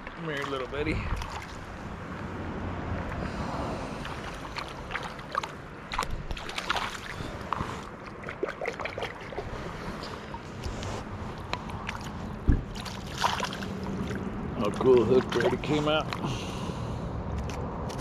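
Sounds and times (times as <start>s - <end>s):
water splashes and knocks: 0.0s - 1.7s, 4.0s - 10.7s, 11.3s - 16.2s.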